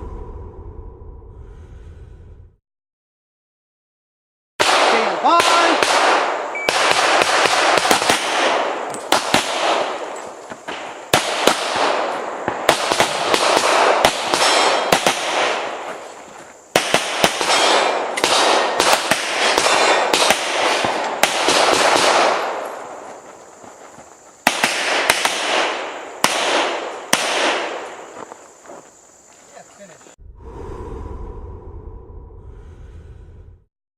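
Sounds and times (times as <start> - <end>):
pistol shots echoing: 4.6 - 16.0, 16.7 - 23.0, 24.4 - 28.0.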